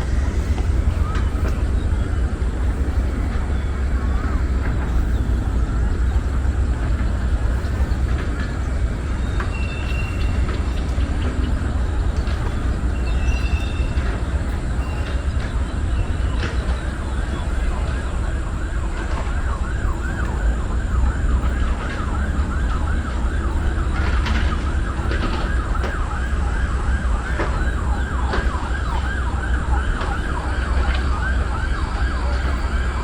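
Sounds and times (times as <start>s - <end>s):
low rumble: 0.0s - 33.0s
siren yelping: 9.8s - 33.0s.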